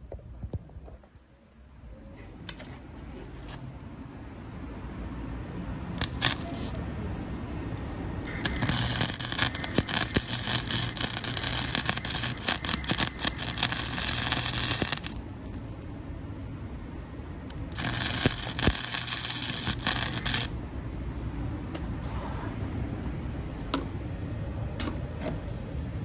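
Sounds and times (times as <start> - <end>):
welder arc crackling: 6.0 - 6.9, 8.2 - 15.8, 17.5 - 20.6.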